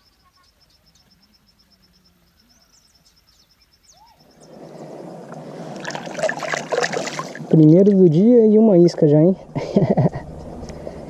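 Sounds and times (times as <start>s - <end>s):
water sloshing and splashing: 4.5s - 8.2s.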